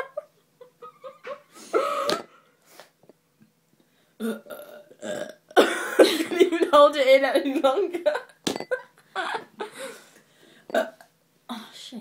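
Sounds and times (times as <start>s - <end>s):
person burping: 4.2s - 6.0s, 10.7s - 11.0s.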